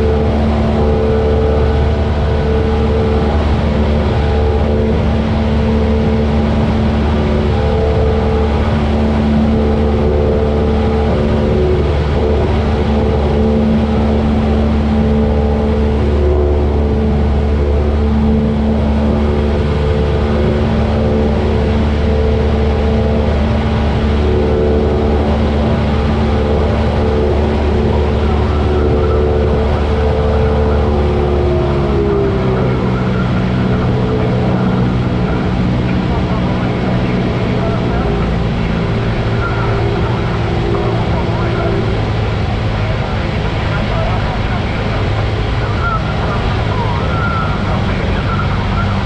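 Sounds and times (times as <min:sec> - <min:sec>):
propeller plane engine droning: 0:00.0 - 0:49.0.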